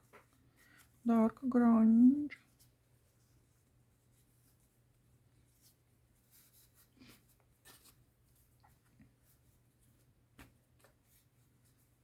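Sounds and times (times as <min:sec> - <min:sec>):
paper rustling and tapping: 0:07.5 - 0:11.8.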